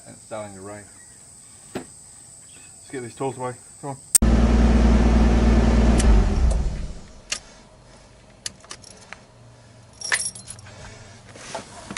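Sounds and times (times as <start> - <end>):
loud low rumble: 4.2 - 7.2
metal hand tools clinking: 10.0 - 10.7.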